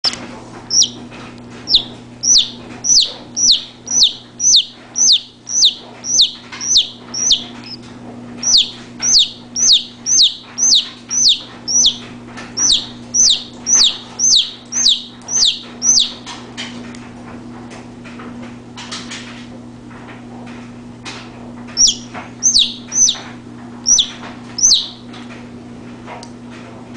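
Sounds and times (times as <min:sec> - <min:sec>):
steady low hum: 0:00.0 - 0:18.4, 0:20.3 - 0:26.9
chick peeping loudly: 0:00.7 - 0:01.0, 0:01.7 - 0:07.8, 0:08.4 - 0:16.3, 0:21.8 - 0:25.0.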